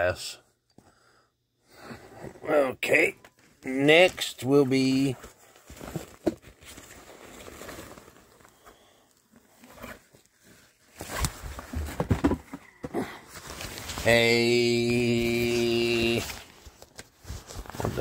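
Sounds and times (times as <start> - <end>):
packaging rustling and crinkling: 5.1 - 12.5, 13.2 - 14.1, 14.8 - 18.0.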